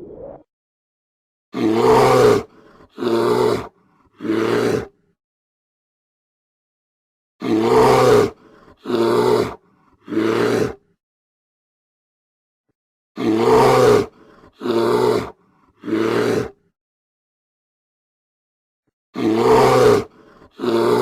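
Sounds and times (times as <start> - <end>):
bear roaring: 1.6 - 5.0, 7.4 - 10.8, 13.2 - 16.6, 19.2 - 21.0.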